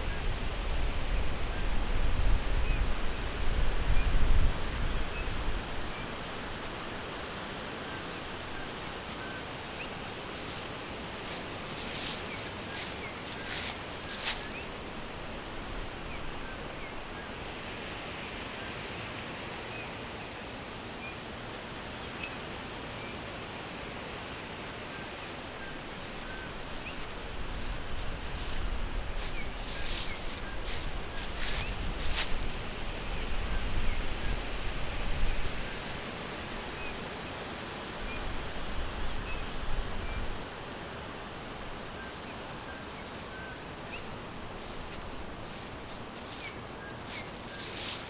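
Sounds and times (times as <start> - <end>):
steady forest hiss: 0.0 - 48.0
brief rustling: 8.0 - 14.8, 25.2 - 32.6, 43.1 - 48.0.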